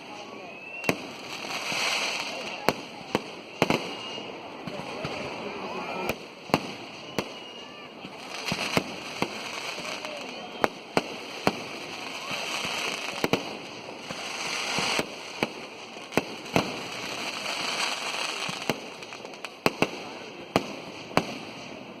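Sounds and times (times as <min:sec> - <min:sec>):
firecrackers banging: 0:00.0 - 0:22.0
continuous crackling hiss: 0:01.0 - 0:03.5, 0:07.8 - 0:22.0.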